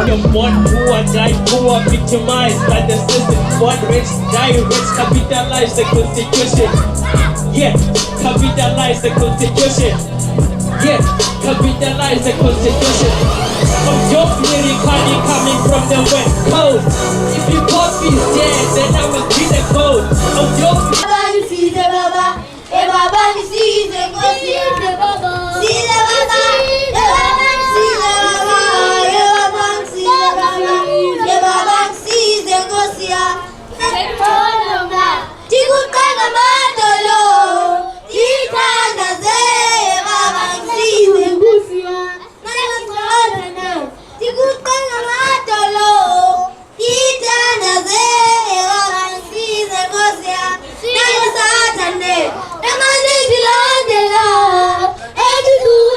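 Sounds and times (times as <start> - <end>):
high voices singing: 0.0 - 55.9
singers breathing: 43.9 - 44.2, 50.6 - 50.9.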